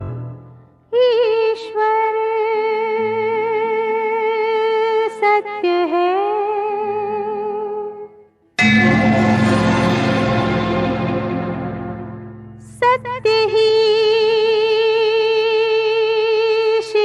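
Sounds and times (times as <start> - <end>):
low sustained accompaniment: 8.6 - 13.8.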